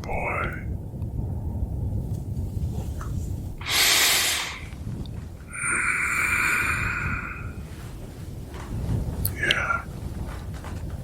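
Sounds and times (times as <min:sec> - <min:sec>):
low wind rumble: 0:00.0 - 0:11.0
close breathing: 0:03.6 - 0:08.2.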